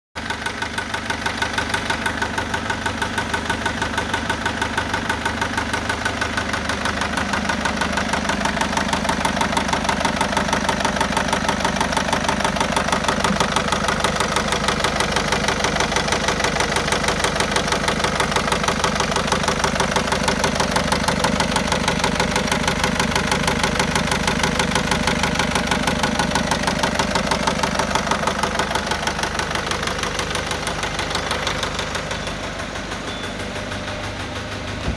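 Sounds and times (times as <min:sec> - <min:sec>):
diesel engine knocking: 0:00.2 - 0:34.9.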